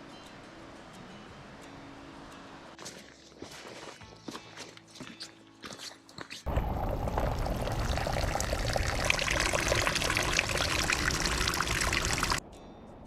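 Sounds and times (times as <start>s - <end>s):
stream water rushing: 6.5s - 12.4s.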